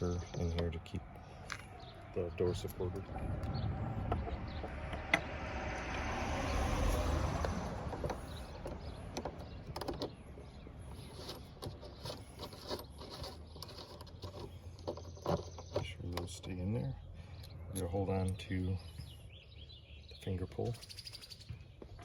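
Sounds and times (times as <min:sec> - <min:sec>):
rumbling whoosh: 0:02.7 - 0:08.6.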